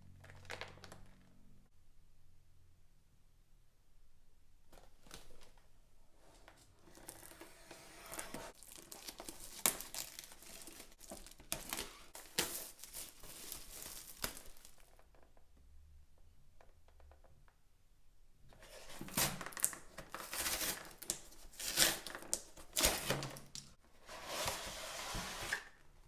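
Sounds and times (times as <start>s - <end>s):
plastic wrapping crinkling and tearing: 0.2s - 1.3s, 8.5s - 15.1s, 18.8s - 23.8s.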